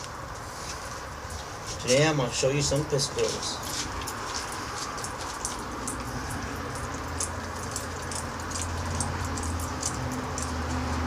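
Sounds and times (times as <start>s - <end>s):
rain falling: 3.6s - 11.0s.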